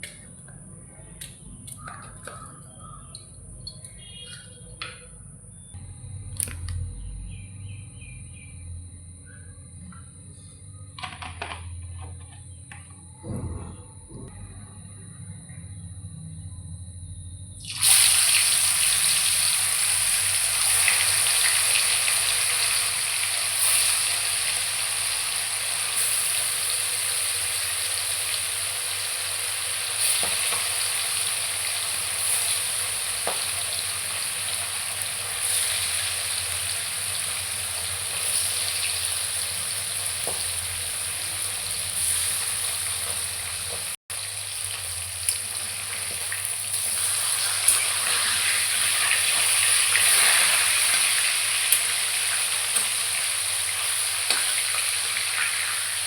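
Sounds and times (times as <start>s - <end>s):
fish sizzling in hot oil: 17.6s - 56.0s.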